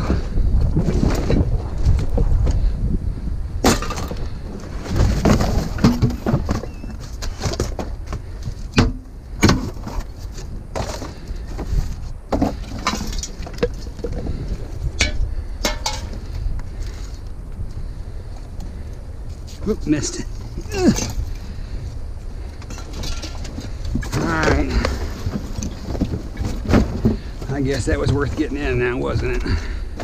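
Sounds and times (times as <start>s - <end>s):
wind on microphone: 0.0s - 7.2s, 9.7s - 19.6s
scrap junk clattering: 3.6s - 17.1s, 22.6s - 30.0s.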